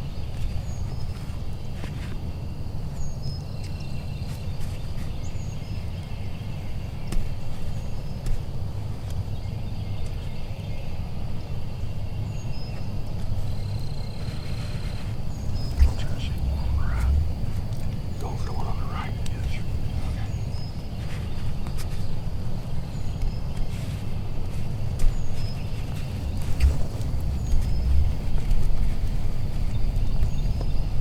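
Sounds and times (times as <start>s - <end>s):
songbird chirps: 14.9s - 22.2s, 25.0s - 31.0s
wind on microphone: 15.0s - 20.7s, 25.8s - 31.0s
turkey gobbling: 15.1s - 20.5s, 26.2s - 30.9s.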